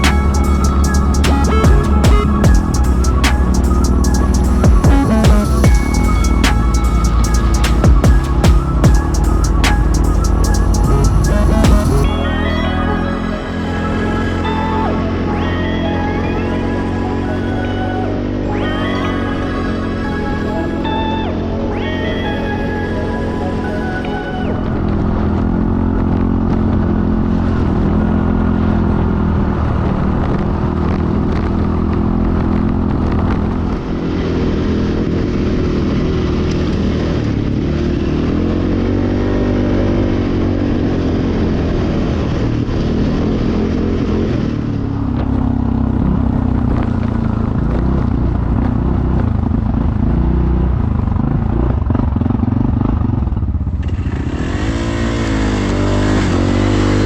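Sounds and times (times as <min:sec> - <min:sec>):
atv engine revving: 0:24.8 - 0:57.0.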